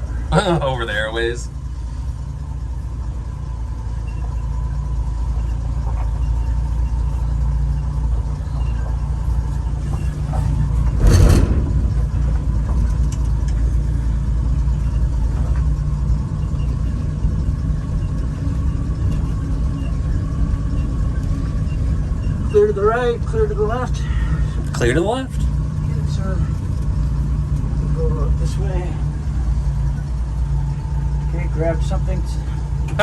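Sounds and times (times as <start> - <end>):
engine running at low speed: 0.0 - 33.0
loud thump: 10.4 - 12.8.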